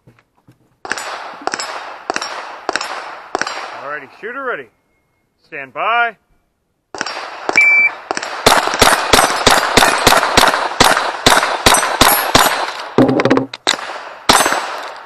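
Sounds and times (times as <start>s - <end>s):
rifle shots: 0.8s - 3.9s, 6.9s - 15.0s
shot timer beep: 7.5s - 8.0s.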